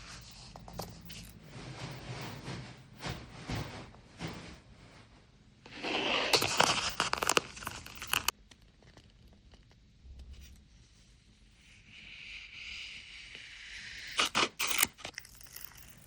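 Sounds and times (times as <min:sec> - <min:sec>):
tape peeling and tearing: 0:05.7 - 0:08.4, 0:14.1 - 0:15.8.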